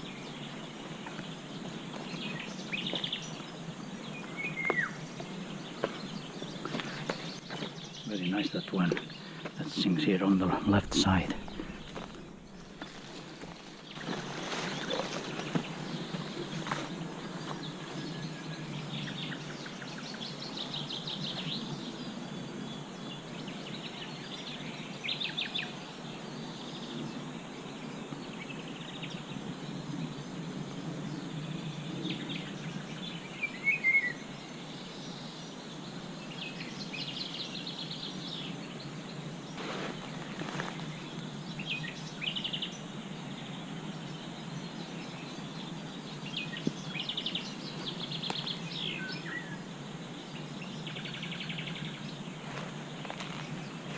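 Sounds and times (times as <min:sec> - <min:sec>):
low background rush: 0:00.0 - 0:33.6
songbirds trilling and chirping: 0:00.0 - 0:53.9.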